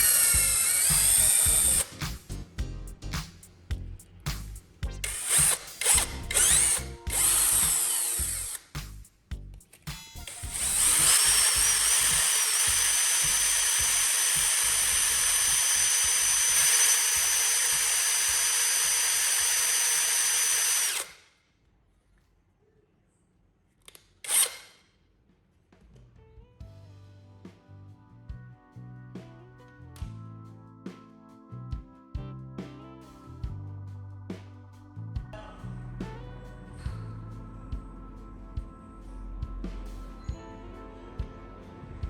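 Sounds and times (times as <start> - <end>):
power tool whining: 0.0 - 2.0, 5.0 - 8.7, 10.3 - 21.2.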